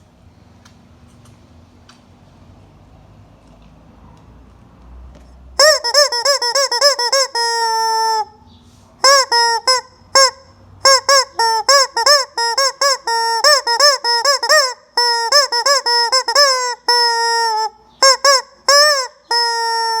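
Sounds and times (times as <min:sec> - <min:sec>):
rubber chicken toy squawking: 0:05.6 - 0:20.0.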